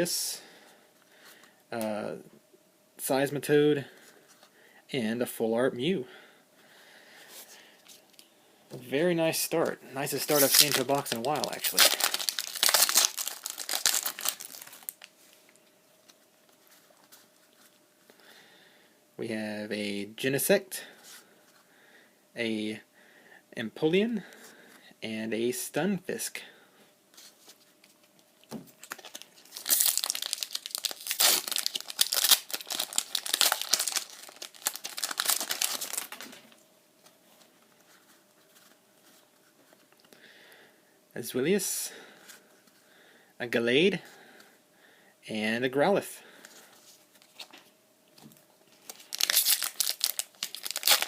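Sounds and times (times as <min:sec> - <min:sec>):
cards being handled: 0:09.6 - 0:17.8
foil wrapper crinkling and tearing: 0:10.1 - 0:15.1, 0:28.8 - 0:36.6, 0:48.8 - 0:51.0.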